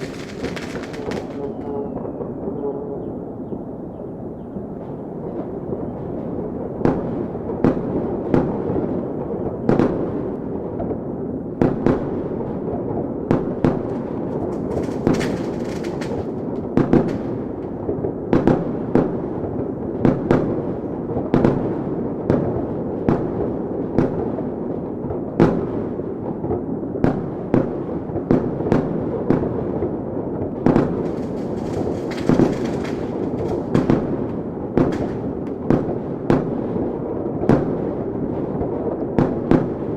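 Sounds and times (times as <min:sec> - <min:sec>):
hissing crackle: 0:00.0 - 0:02.0, 0:13.8 - 0:17.8, 0:30.8 - 0:35.7
sharp firework bangs: 0:00.0 - 0:02.0, 0:13.3 - 0:19.1, 0:30.5 - 0:36.8
fireworks din: 0:00.0 - 0:03.0, 0:12.7 - 0:19.1, 0:30.4 - 0:37.8.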